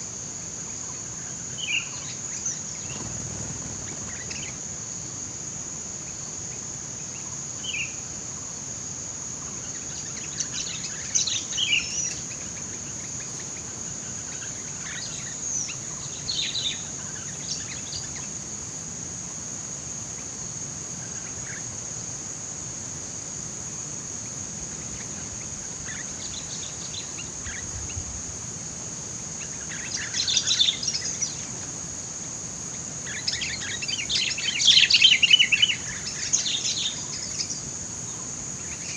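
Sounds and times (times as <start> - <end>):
high-pitched insect drone: 0.0 - 38.9
birds chirping: 1.6 - 4.9.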